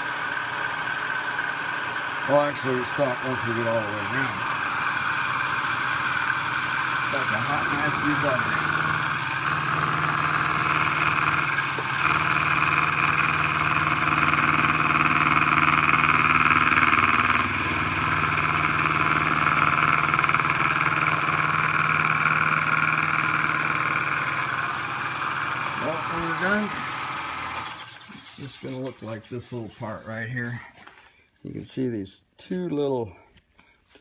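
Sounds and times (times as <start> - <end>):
milling machine hum: 0.0 - 29.1
cutter hissing on metal: 2.2 - 27.8.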